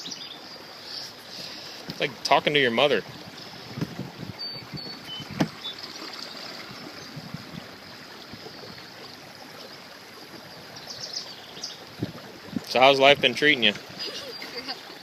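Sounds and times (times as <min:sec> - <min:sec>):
water rushing past boat: 0:00.0 - 0:15.0
wind noise: 0:03.0 - 0:05.6, 0:06.6 - 0:08.8, 0:11.9 - 0:13.4.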